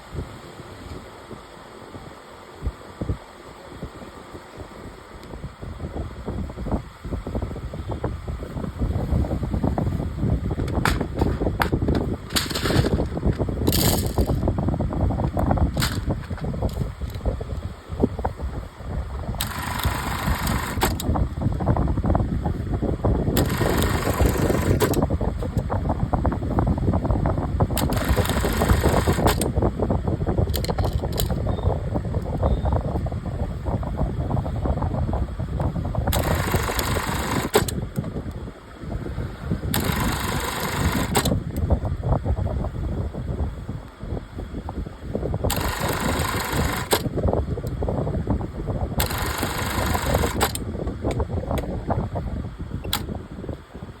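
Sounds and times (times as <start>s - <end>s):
sewing machine clattering: 10.6s - 14.4s, 19.4s - 21.1s, 23.4s - 25.0s, 27.8s - 29.5s, 36.1s - 37.8s, 39.8s - 41.4s, 45.5s - 47.1s, 49.0s - 50.6s.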